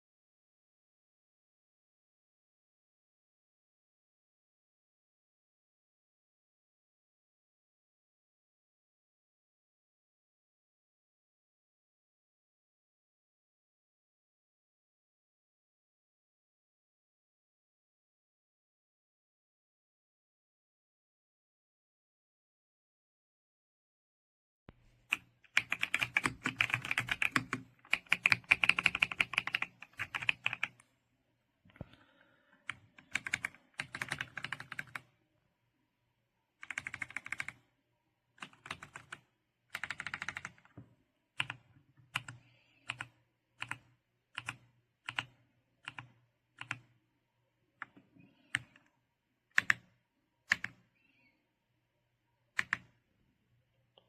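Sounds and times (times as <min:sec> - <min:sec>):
mechanical keyboard typing: 0:25.1 - 0:30.8, 0:32.7 - 0:35.0, 0:36.6 - 0:37.6, 0:38.4 - 0:40.7, 0:41.4 - 0:46.9, 0:49.5 - 0:49.9, 0:50.5 - 0:50.8, 0:52.6 - 0:52.9.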